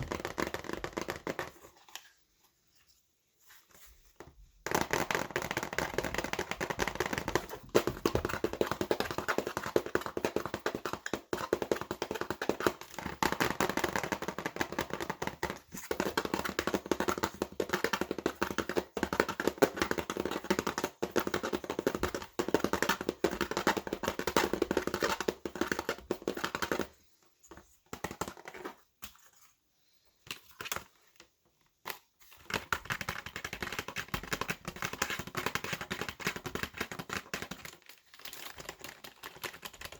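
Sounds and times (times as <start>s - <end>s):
fast typing on keyboard: 32.4s - 39.9s.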